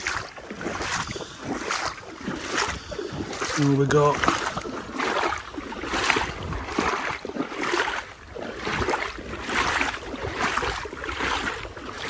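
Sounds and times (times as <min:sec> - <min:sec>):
legs wading through water: 0:00.0 - 0:12.0
wind rumbling on microphone: 0:00.0 - 0:12.0.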